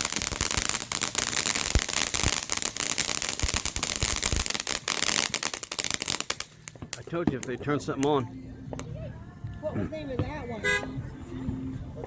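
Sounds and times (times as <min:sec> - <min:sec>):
fireworks crackling: 0:00.0 - 0:08.9
low firework thumps: 0:01.6 - 0:11.9.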